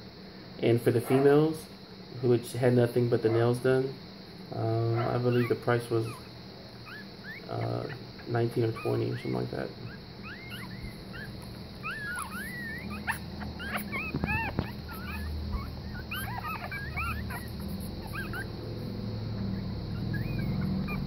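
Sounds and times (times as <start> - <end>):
puppies squeaking and whimpering: 1.0 - 1.4, 4.6 - 21.0.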